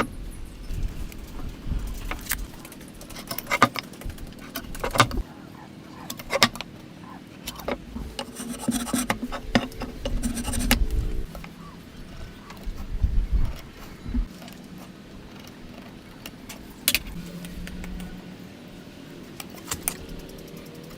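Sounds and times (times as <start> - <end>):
steady hum: 0.0 - 20.9
rubbing and scraping wood: 7.5 - 16.0.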